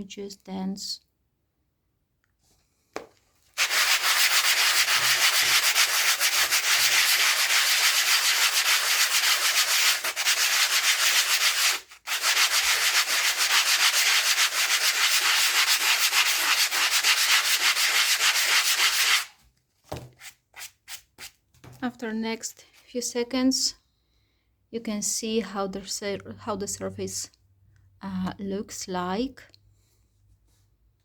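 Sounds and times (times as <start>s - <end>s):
sanding blocks scraping together: 3.6s - 19.3s.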